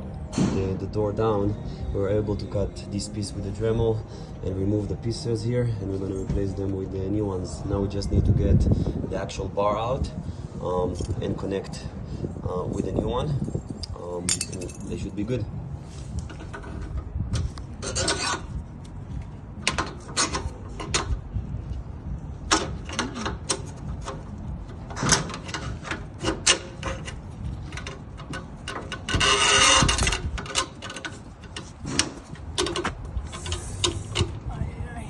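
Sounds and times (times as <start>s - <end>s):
metal door hardware clicking: 24.9s - 34.4s.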